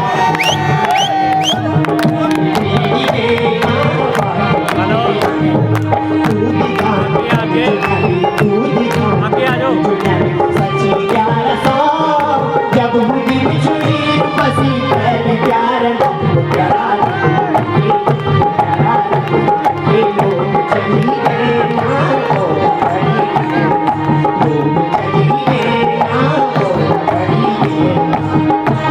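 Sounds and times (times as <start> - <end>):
hand drum rhythm: 0.0 - 28.9.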